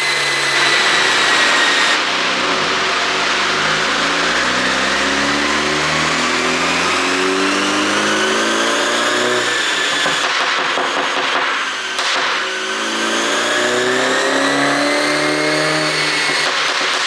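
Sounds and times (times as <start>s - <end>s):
car engine accelerating: 0.0s - 17.0s
exhaust crackles and pops: 2.0s - 12.6s, 15.0s - 17.0s.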